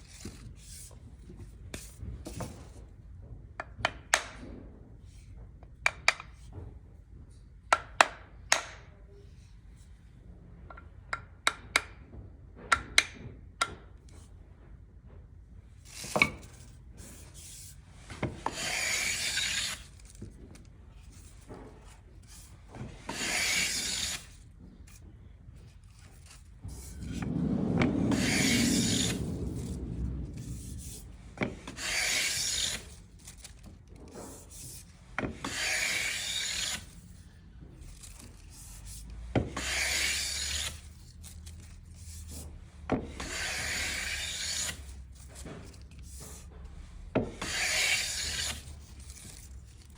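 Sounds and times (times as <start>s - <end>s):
hand plane scraping wood: 15.9s - 20.3s, 21.0s - 25.0s, 25.8s - 37.2s, 37.8s - 49.9s.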